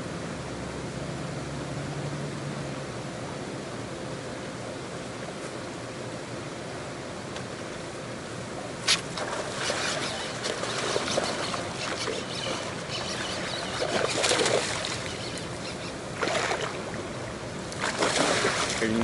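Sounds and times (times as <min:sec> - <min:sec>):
water splashing and sloshing: 0:08.9 - 0:19.0.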